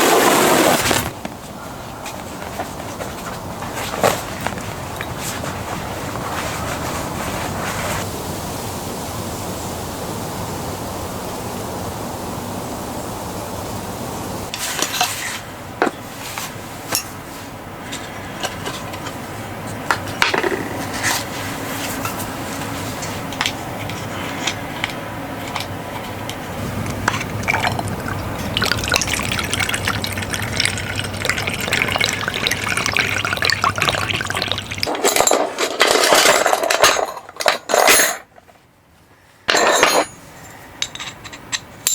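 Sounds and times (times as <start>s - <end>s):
water pouring or bubbling: 26.6s - 34.9s.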